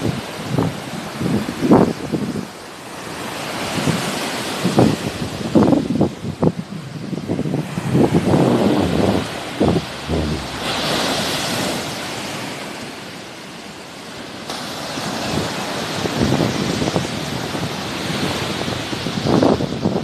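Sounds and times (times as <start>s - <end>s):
wind buffeting microphone: 5.0s - 12.1s
sea waves washing in: 6.6s - 13.9s.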